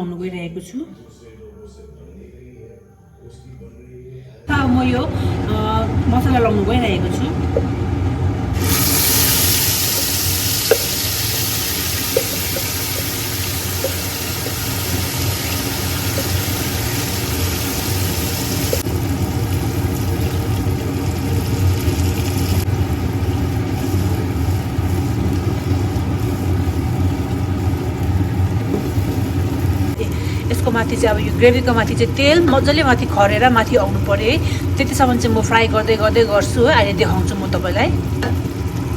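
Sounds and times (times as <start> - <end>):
low mechanical hum: 0.9 - 38.9
paste sizzling in oil: 8.6 - 30.0.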